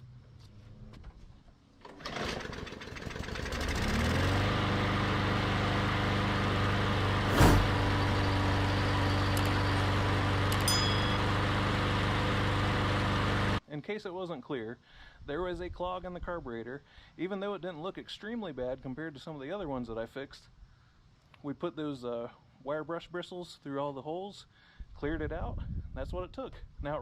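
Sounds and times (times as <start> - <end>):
lawn mower engine starting: 1.8 - 13.6
sharp knock: 7.3 - 8.2.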